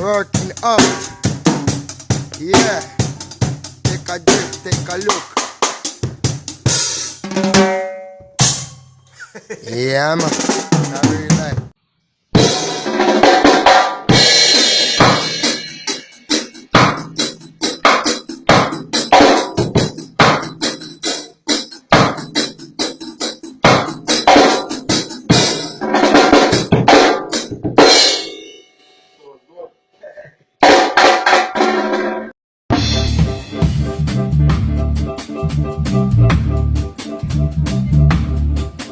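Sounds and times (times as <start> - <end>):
reggae drum kit playing: 0.0 - 28.6, 30.6 - 38.9.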